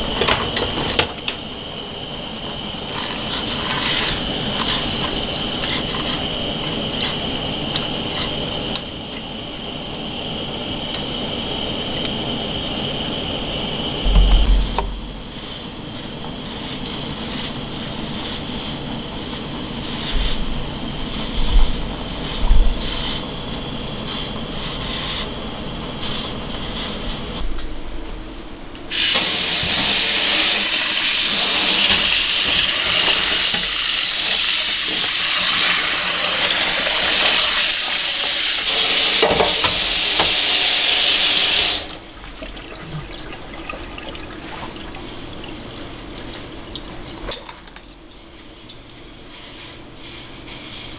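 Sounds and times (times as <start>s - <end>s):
kitchen handling noise: 0.0s - 8.4s, 28.9s - 48.9s
water running from a tap: 1.4s - 9.5s, 28.9s - 47.4s.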